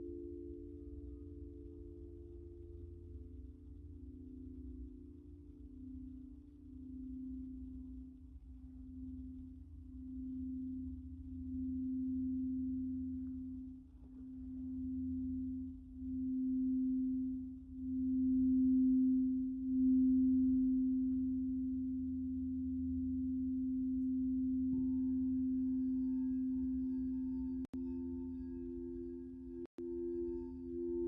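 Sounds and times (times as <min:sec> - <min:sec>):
singing bowl low tone: 0:00.0 - 0:31.0
higher bowl ring: 0:08.8 - 0:31.0.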